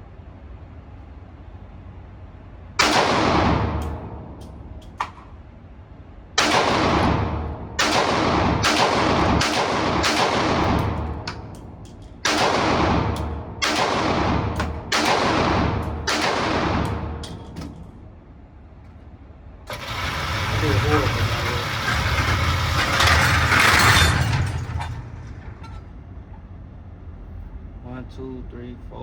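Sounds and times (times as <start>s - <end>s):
loud pistol shots echoing: 2.8s - 4.3s, 6.4s - 11.5s, 12.2s - 17.6s
faint distant gunshots: 12.3s - 17.5s.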